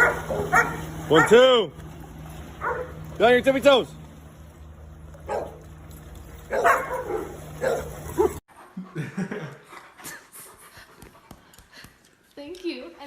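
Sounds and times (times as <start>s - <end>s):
dog barking: 0.0s - 1.4s, 2.6s - 3.0s, 5.3s - 5.6s, 6.5s - 8.4s.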